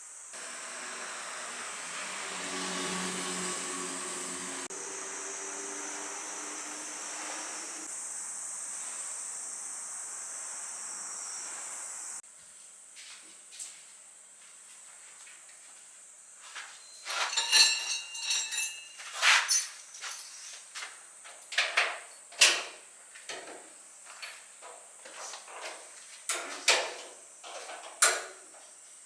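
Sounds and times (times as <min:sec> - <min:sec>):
objects knocking and clinking: 0:17.0 - 0:20.5.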